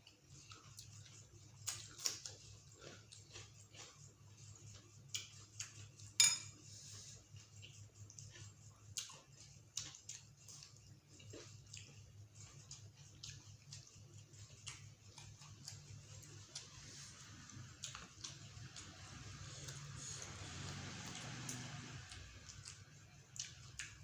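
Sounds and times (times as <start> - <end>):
steady low hum: 0.0 - 24.0
chewing and utensil clicks: 21.1 - 24.0.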